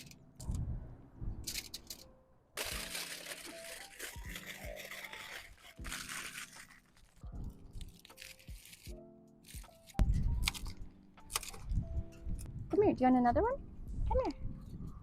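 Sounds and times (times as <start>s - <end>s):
crunching and crinkling handling: 2.6s - 10.0s.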